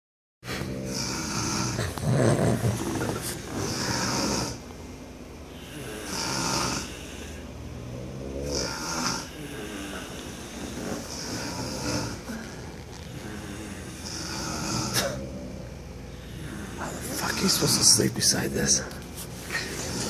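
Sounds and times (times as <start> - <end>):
heavy snoring: 0.5 - 4.6, 5.5 - 17.9, 19.6 - 20.0.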